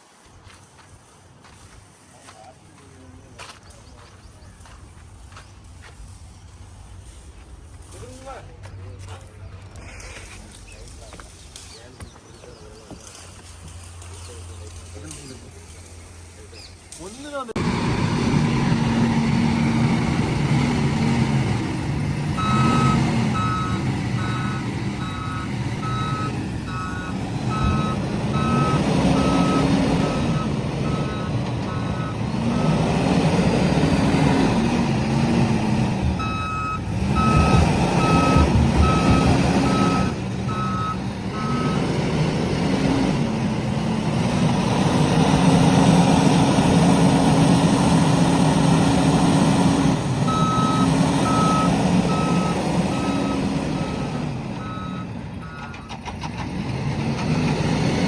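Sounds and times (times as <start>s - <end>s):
diesel engine under load: 2.7s - 58.0s
reversing alarm beeping: 22.3s - 33.0s, 36.1s - 42.0s, 50.3s - 56.0s.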